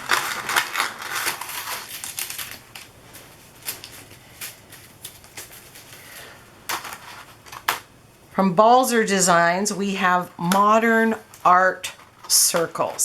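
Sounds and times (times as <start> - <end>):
stencil sheets being shuffled: 0.0 - 8.0, 9.0 - 13.0.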